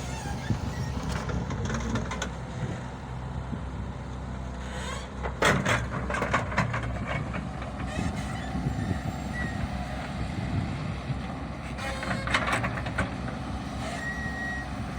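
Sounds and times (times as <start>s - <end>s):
excavator diesel engine running: 0.0s - 14.9s.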